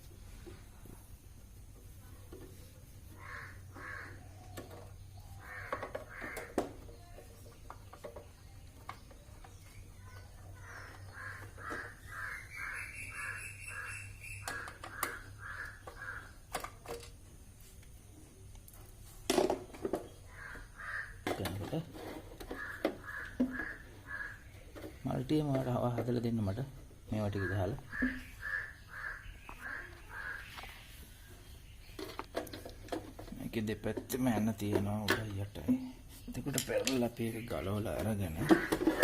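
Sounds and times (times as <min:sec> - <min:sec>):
crows cawing: 0:03.1 - 0:04.4, 0:05.4 - 0:06.8, 0:10.6 - 0:16.5, 0:20.3 - 0:21.3, 0:22.4 - 0:24.9, 0:27.3 - 0:30.8, 0:38.4 - 0:39.0.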